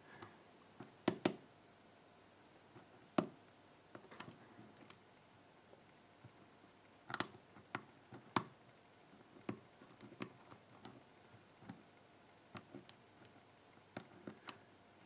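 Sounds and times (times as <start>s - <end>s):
lock pick clicking in lock: 7.1s - 7.4s.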